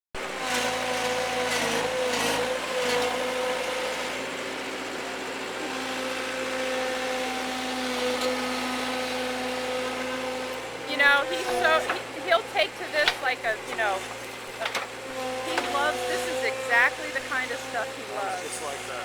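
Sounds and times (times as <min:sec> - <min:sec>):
skid-steer loader engine running: 0:00.2 - 0:19.0.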